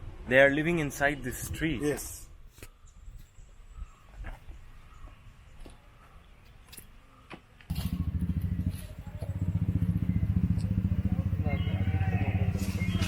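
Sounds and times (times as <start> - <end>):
engine chugging: 7.7 - 13.0.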